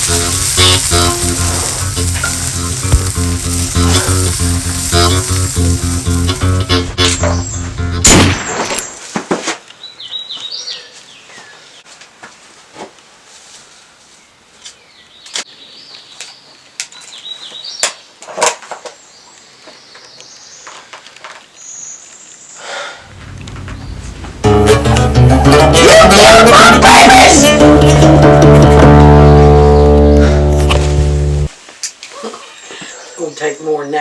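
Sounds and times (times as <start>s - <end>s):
loud bang: 8.0s - 9.0s
birds chirping: 23.1s - 31.5s.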